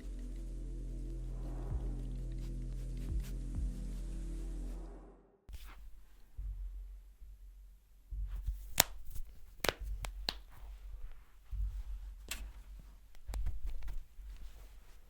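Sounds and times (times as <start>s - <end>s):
sharp clicks and slaps: 8.5s - 10.6s, 12.3s - 14.0s.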